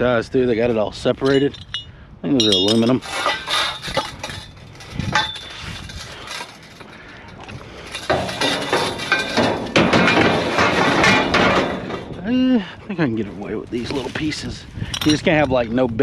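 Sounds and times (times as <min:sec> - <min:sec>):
scrap metal clattering: 0:01.2 - 0:12.3.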